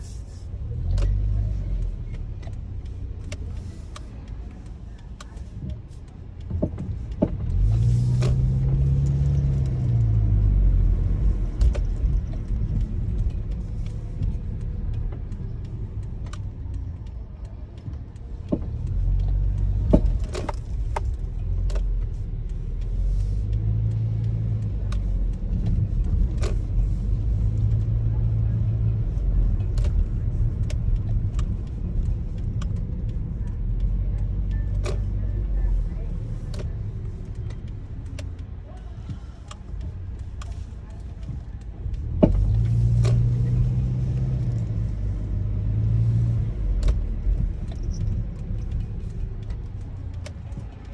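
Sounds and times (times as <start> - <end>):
car rumbling: 0.0 - 50.9
suspension clunks and clicks: 0.0 - 50.9.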